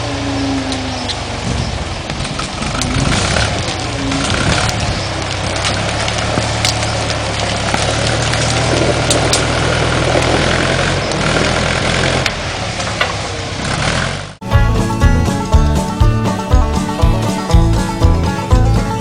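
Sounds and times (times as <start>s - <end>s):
forklift engine running: 0.0s - 19.0s
sharp cracks and clanks: 2.1s - 14.1s.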